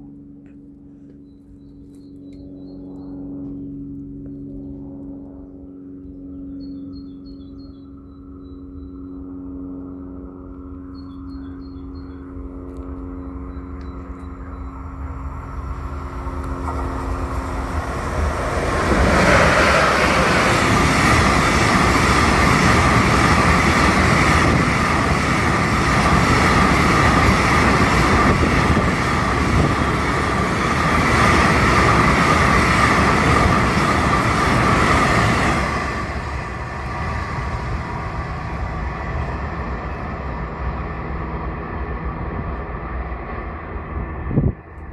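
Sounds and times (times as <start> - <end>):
train passing: 6.9 - 44.9.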